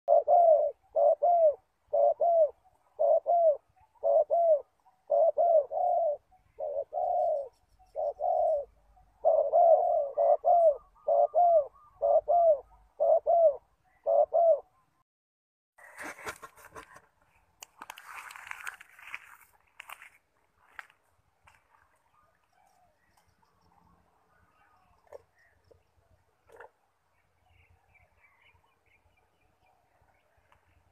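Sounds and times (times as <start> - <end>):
dove cooing: 0.1 - 14.8
crackling rustling noise: 15.8 - 22.6.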